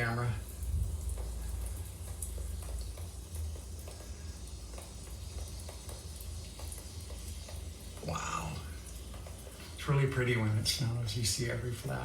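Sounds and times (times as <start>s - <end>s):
faint irregular ticks: 0.0s - 11.7s
wind rumble on microphone: 0.6s - 1.1s.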